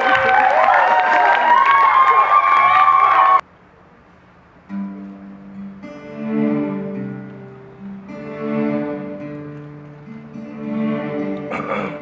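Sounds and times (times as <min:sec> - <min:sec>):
sustained string-like chords: 0:04.7 - 0:12.0.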